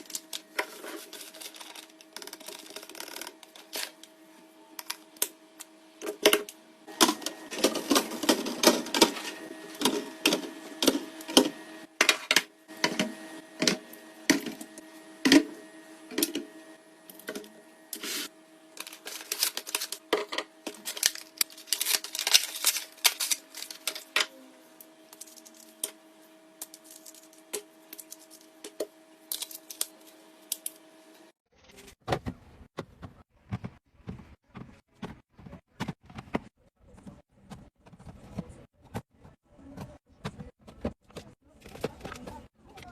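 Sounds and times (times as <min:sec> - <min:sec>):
food packages clicking and tapping: 0:18.8 - 0:24.3.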